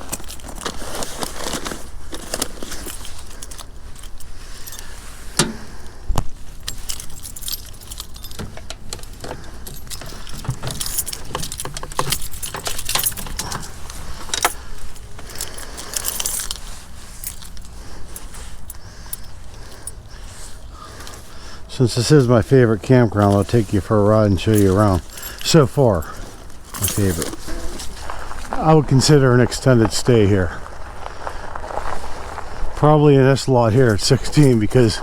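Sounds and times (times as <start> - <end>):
metallic jangling and rattling: 0.0 - 30.1
low riding hum: 0.0 - 35.0.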